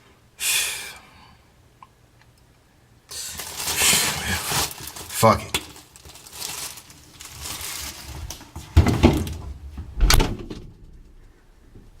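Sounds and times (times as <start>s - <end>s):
rustling: 3.1s - 12.0s
refrigerator door thumping shut: 8.8s - 10.8s.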